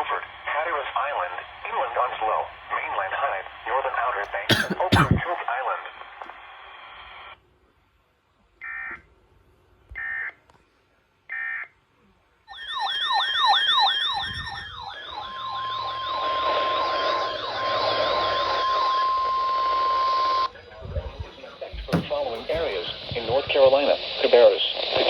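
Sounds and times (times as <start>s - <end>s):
wailing siren: 12.5s - 19.9s
steady warning alarm tone: 12.5s - 20.1s.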